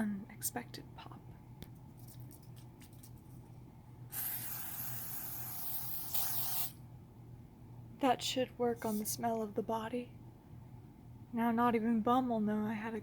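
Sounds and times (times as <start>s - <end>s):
spray bottle hissing: 4.1s - 6.8s.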